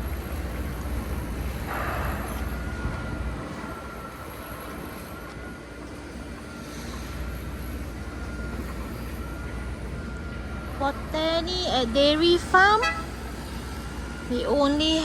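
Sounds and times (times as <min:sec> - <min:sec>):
road traffic rumble: 0:10.8 - 0:15.0.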